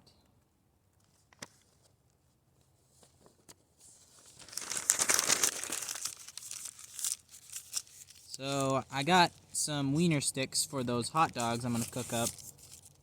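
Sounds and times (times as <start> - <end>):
paper crumpling: 3.8 - 8.8, 11.2 - 13.0.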